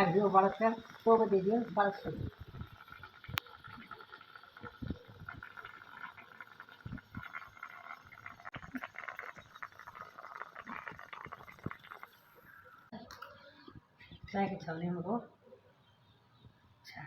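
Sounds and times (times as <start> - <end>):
water bubbling in a pan: 0.0 - 13.6.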